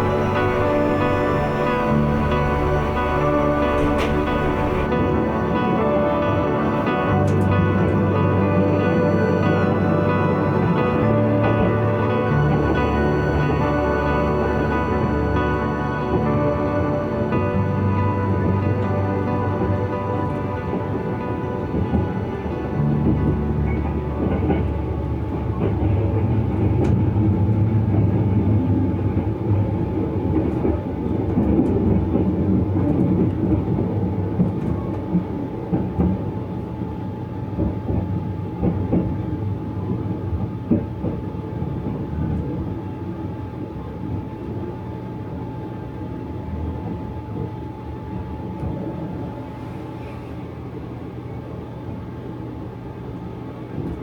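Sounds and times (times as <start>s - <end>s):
wheels clicking: 0.0s - 5.1s
train rumbling on rails: 0.0s - 54.0s.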